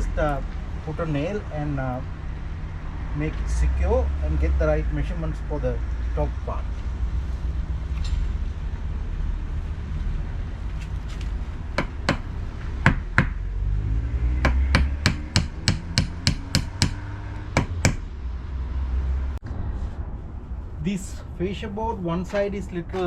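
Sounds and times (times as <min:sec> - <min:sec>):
hammer driving nail into wood: 0:14.4 - 0:17.0, 0:17.6 - 0:18.0.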